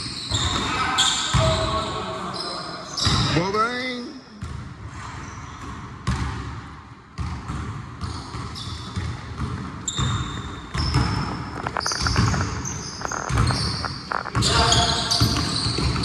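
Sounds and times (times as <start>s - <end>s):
sneaker squeaks: 0.0s - 3.7s, 7.2s - 16.0s
basketball bouncing on gym floor: 4.4s - 4.9s, 5.5s - 16.0s.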